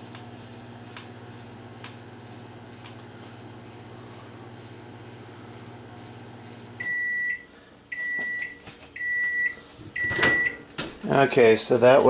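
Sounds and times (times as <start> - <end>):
microwave oven humming: 0.0 - 12.0
high microwave beeps: 6.8 - 10.6.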